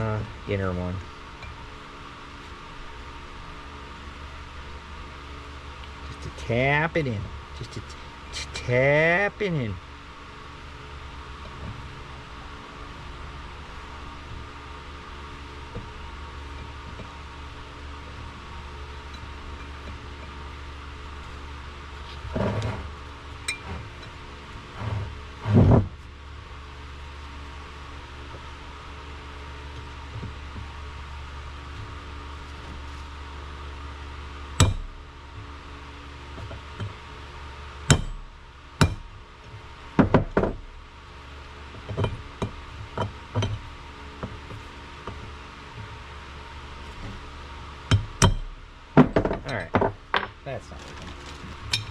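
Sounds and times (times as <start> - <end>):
steady hum: 0.0 - 51.9
metal parts knocking on workbench: 49.0 - 51.9.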